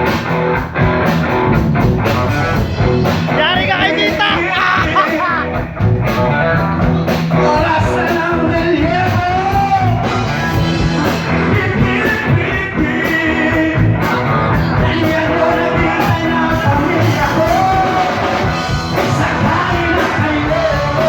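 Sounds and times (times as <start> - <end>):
rock and roll band: 0.0 - 21.0
steady drum beat: 0.0 - 21.0
person singing: 3.3 - 21.0.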